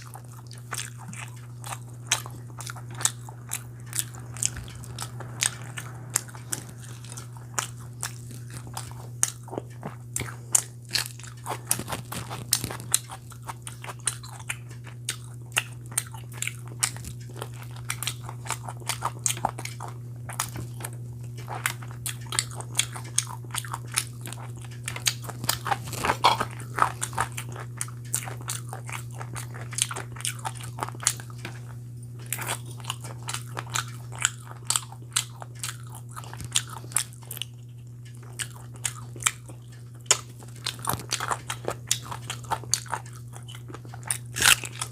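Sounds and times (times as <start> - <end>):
low hum: 0.0 - 13.0
person chewing food: 0.0 - 44.9.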